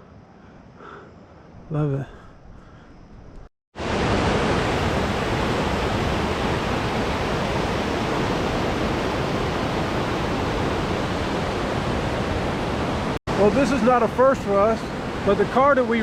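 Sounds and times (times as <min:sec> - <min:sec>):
roar of rushing water: 0:03.8 - 0:16.0.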